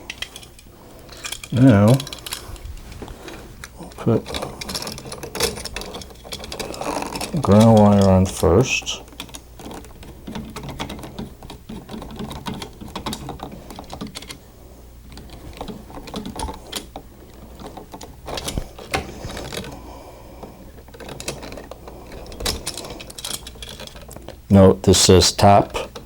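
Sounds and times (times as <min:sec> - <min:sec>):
hand tools clicking on wire and switch: 0:00.0 - 0:14.4, 0:15.1 - 0:19.8, 0:20.4 - 0:24.4.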